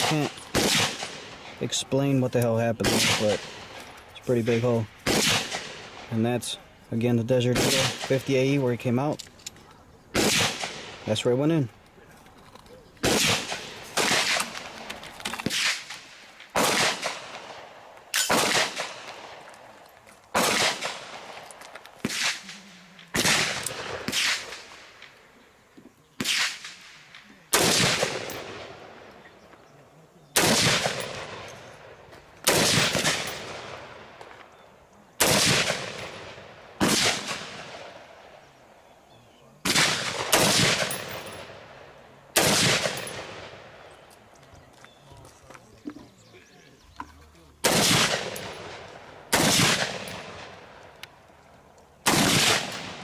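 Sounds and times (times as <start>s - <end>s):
gunshots with echoing tail: 0.0s - 1.6s, 2.8s - 3.8s, 4.5s - 6.2s, 7.4s - 8.6s, 10.2s - 11.2s, 13.0s - 19.6s, 20.3s - 21.4s, 22.0s - 25.2s, 26.2s - 29.1s, 30.4s - 34.2s, 35.2s - 38.4s, 39.6s - 43.9s, 47.6s - 50.8s, 52.0s - 53.0s.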